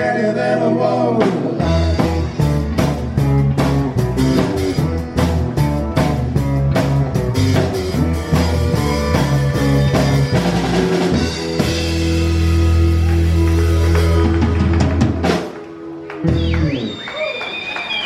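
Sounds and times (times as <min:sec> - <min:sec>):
country-rock band playing: 0:00.0 - 0:17.1
drum hits and fills: 0:01.2 - 0:16.5.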